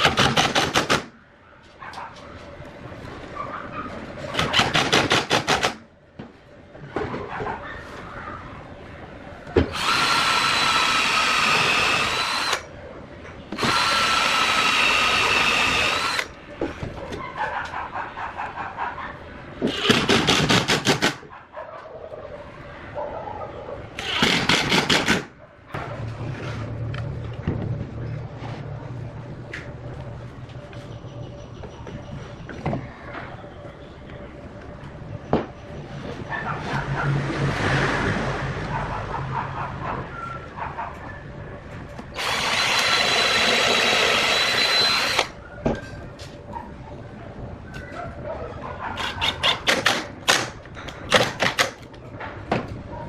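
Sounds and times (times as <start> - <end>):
power tool whining: 9.7 - 12.6, 13.5 - 16.3, 42.2 - 45.4.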